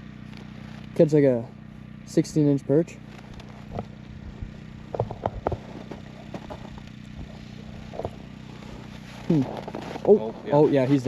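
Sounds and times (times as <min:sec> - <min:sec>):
low mechanical hum: 0:00.0 - 0:11.0
knocks and clatters: 0:04.9 - 0:08.2.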